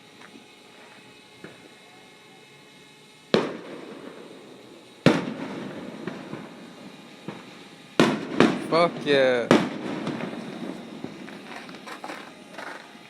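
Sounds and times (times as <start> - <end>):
fireworks bangs: 3.3 - 4.4, 5.0 - 12.8
fireworks rumble: 3.3 - 13.0.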